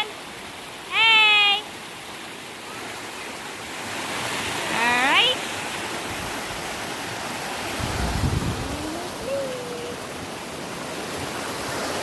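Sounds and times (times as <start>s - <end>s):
water rushing over rocks: 0.0s - 12.0s.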